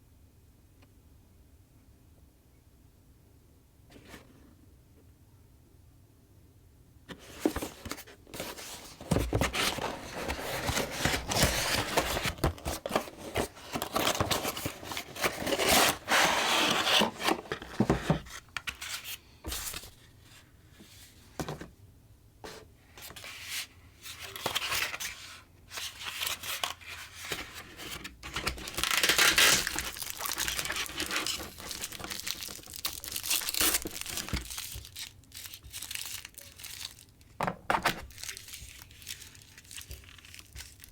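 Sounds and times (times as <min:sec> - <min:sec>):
packaging tearing and crinkling: 0:08.5 - 0:17.8, 0:26.2 - 0:40.9.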